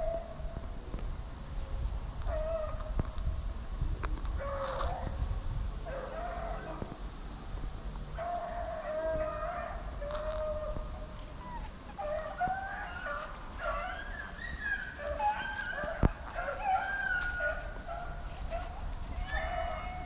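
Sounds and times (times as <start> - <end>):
hounds baying: 5.9 - 6.9, 8.2 - 20.0.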